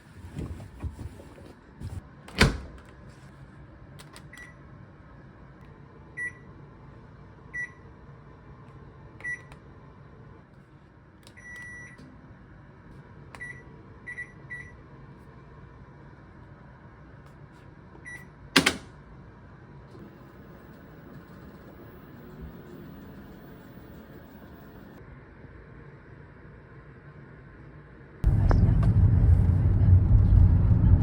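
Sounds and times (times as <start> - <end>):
appliance keypad beeps: 9.2 - 9.5, 11.4 - 12.0, 13.4 - 14.7
low steady hum: 19.4 - 31.0.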